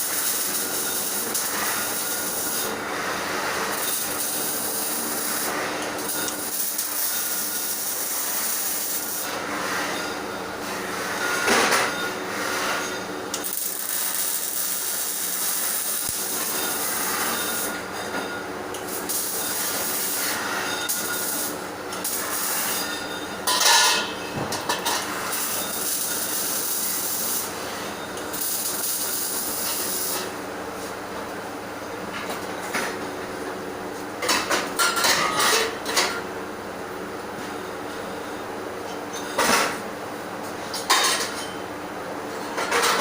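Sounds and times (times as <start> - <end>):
welder arc hissing and crackling: 0.0 - 11.1, 12.3 - 17.9, 18.8 - 22.9, 24.9 - 30.9.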